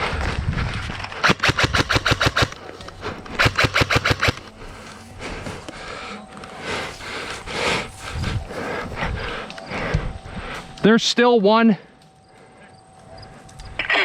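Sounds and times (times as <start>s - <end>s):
airsoft rifle firing bursts: 1.2s - 2.6s, 3.3s - 4.5s.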